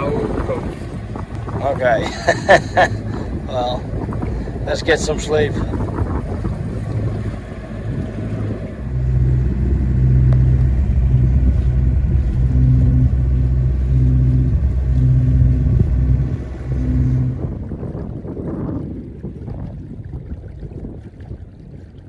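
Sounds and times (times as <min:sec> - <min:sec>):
low rumble: 0:00.0 - 0:22.0
motor humming: 0:05.7 - 0:17.8.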